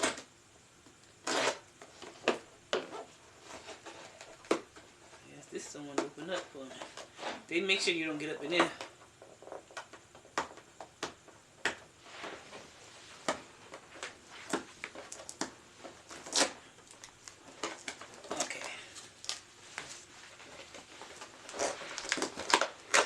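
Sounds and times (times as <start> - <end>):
packaging rustling: 13.7 - 23.0.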